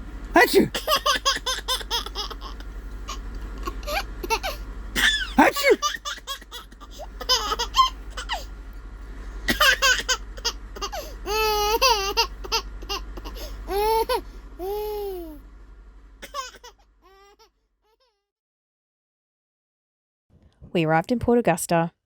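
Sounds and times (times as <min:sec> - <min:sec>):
baby laughing and squealing: 0:00.7 - 0:08.5, 0:09.5 - 0:15.4, 0:16.2 - 0:17.5.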